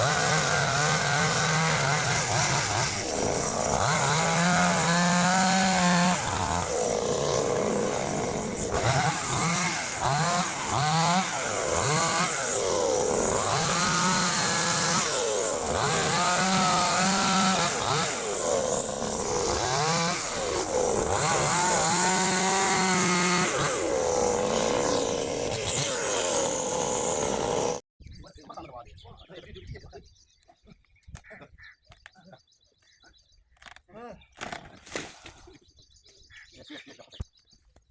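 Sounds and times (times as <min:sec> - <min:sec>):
chainsaw revving: 0:00.0 - 0:27.8.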